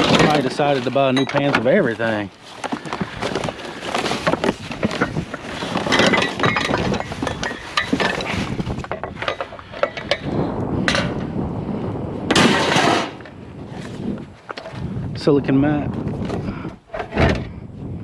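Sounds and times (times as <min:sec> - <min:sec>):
kitchenware clinking and clattering: 0:00.0 - 0:01.9, 0:04.9 - 0:10.2
scraping clatter: 0:00.0 - 0:11.3, 0:12.3 - 0:14.8, 0:16.1 - 0:17.6.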